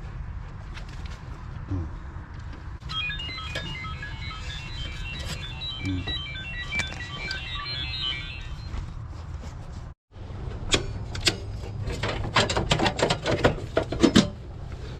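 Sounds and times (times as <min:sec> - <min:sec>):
quick chiming tune: 0:02.8 - 0:08.7.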